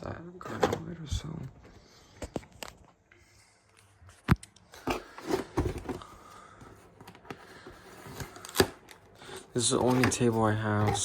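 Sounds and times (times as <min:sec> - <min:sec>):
packaging rustling and scraping: 0:04.8 - 0:11.0
packaging clicks: 0:07.0 - 0:11.0.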